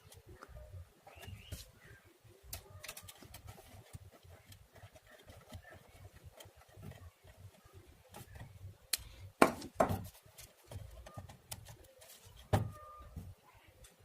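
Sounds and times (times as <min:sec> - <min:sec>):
wires and connectors clicking: 0:02.4 - 0:09.1, 0:10.1 - 0:12.5.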